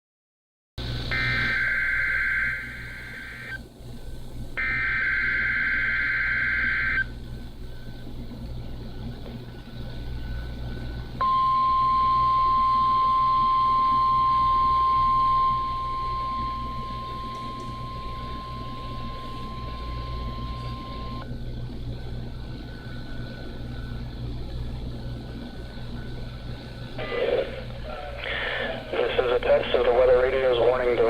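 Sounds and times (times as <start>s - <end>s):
buzzing data bursts: 0.9s - 3.6s, 4.6s - 7.2s
single-pitch warning alarm tone: 1.1s - 3.6s, 4.6s - 7.2s, 11.2s - 21.3s.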